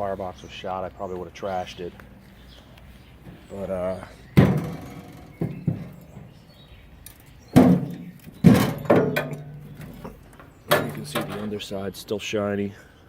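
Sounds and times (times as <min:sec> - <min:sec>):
metal knocks and clanks: 0:04.3 - 0:06.5, 0:07.5 - 0:11.6.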